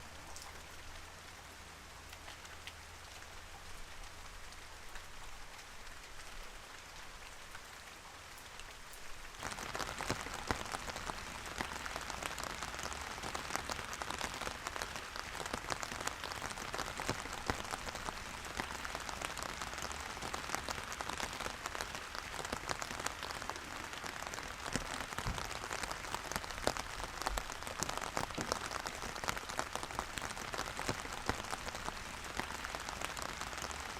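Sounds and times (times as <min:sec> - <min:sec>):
steady rain falling: 0:00.0 - 0:33.9
raindrops tapping: 0:08.4 - 0:33.9.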